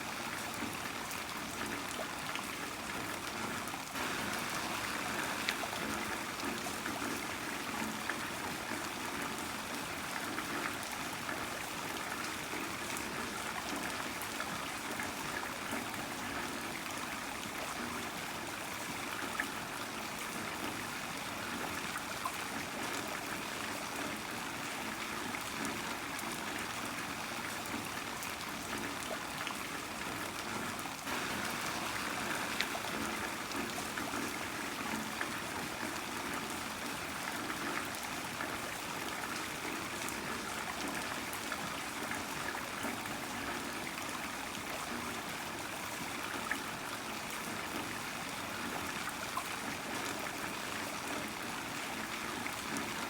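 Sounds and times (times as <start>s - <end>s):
water trickling: 0.6s - 12.0s, 27.6s - 48.0s
heavy rain falling: 4.0s - 7.7s, 31.1s - 35.4s.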